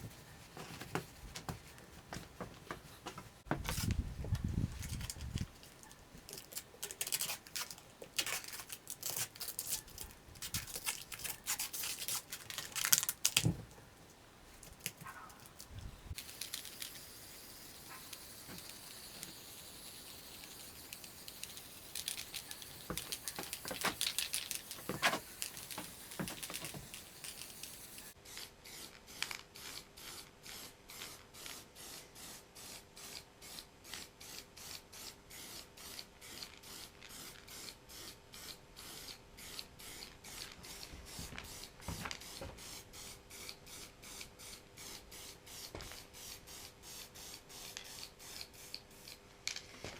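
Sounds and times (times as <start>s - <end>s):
rubbing strokes on metal: 14.7s - 28.9s.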